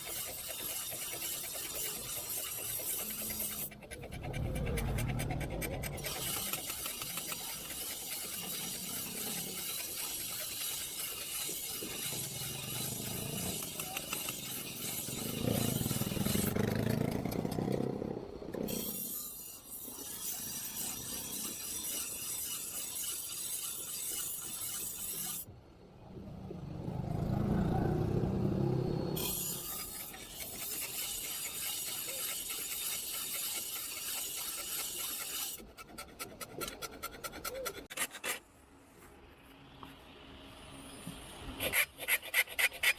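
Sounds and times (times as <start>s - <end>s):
metal filing on metal: 0.0s - 17.0s, 18.7s - 25.5s, 29.2s - 38.4s, 41.6s - 42.9s.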